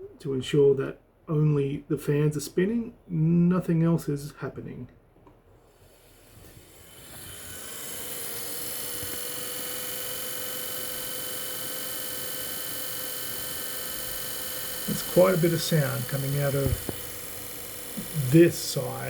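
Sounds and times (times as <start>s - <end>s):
cooling fans whirring: 5.6s - 19.0s
fan bearing rattling: 6.4s - 19.0s.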